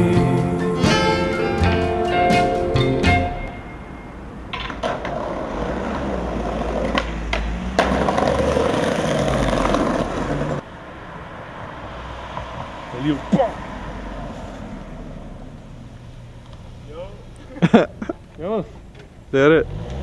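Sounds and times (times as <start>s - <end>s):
skateboard wheels rolling on pavement: 0.0s - 20.0s
skateboard clacks: 4.5s - 10.6s.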